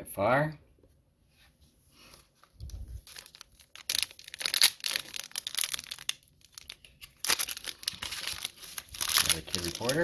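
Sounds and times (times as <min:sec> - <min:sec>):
plastic packaging crinkling: 0:02.4 - 0:10.0.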